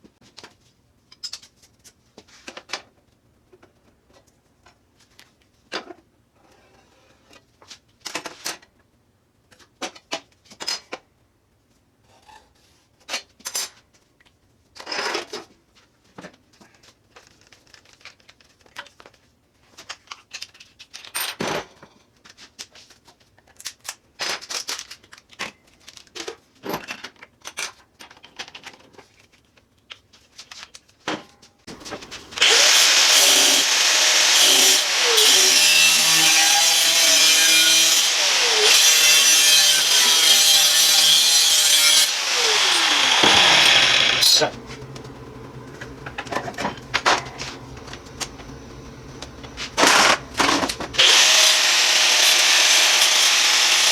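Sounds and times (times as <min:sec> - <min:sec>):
power tool cutting steel: 0:31.7 - 0:53.9.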